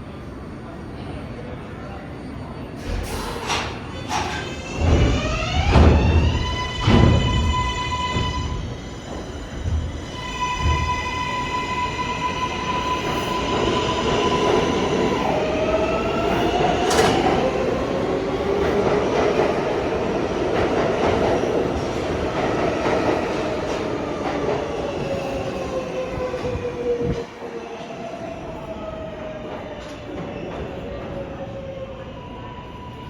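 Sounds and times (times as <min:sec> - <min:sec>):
steel wheels on rail: 0:02.8 - 0:27.2.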